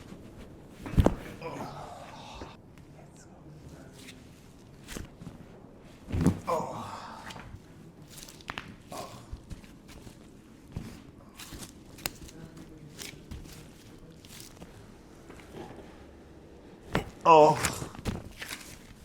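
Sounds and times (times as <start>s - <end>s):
person groaning: 1.4s - 2.6s, 6.4s - 7.3s, 17.0s - 18.0s.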